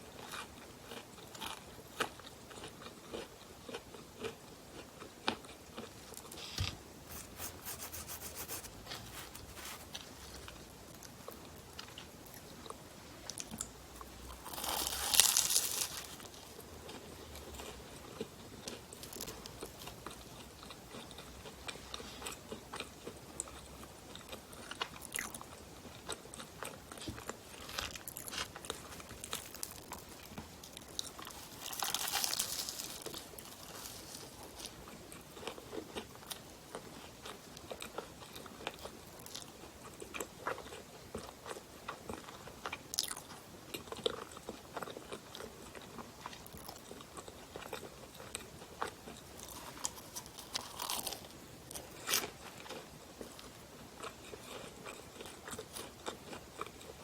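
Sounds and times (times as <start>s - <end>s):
chewing pastry and bread: 0.0s - 57.0s
crunchy bites: 14.4s - 16.3s, 30.7s - 34.8s, 49.4s - 52.2s.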